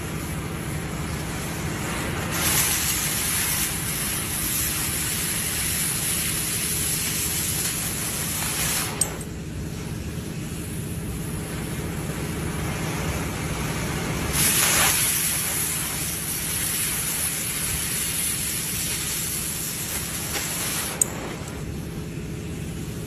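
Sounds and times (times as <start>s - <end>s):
gas cutting torch hissing: 0.0s - 23.0s.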